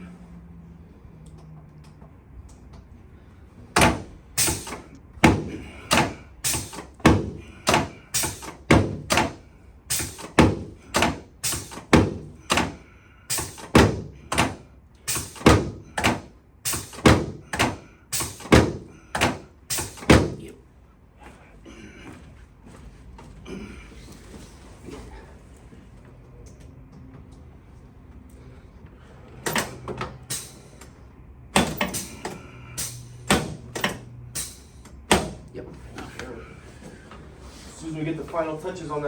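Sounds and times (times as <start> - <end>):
sharp thunks of chiropractic adjusting: 3.7 - 20.5, 31.5 - 35.5.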